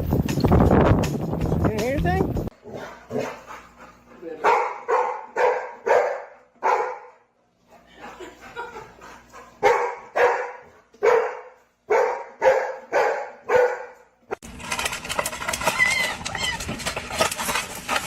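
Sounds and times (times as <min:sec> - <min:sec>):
dog barking: 0:04.4 - 0:07.2, 0:09.6 - 0:14.1.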